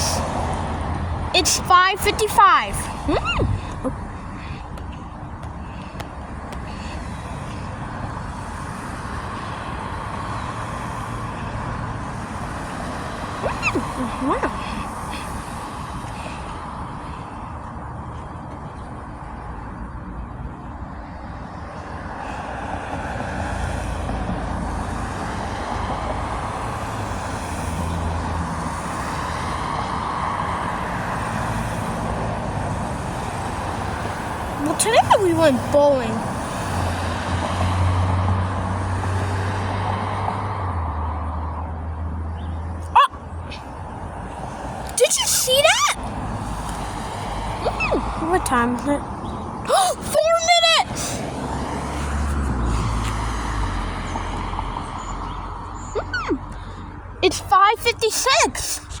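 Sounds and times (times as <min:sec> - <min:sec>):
vehicle rumble with hiss: 0:00.0 - 0:59.0.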